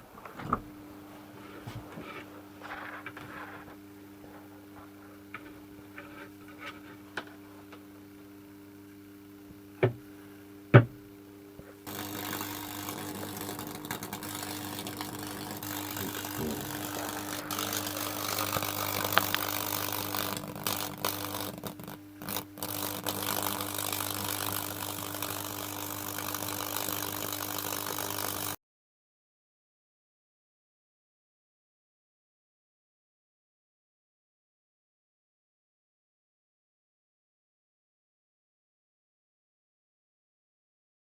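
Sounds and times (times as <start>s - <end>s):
electrical hum: 0.0s - 28.6s
electric discharge crackling: 11.9s - 28.6s
sharp clicks: 11.9s - 28.6s.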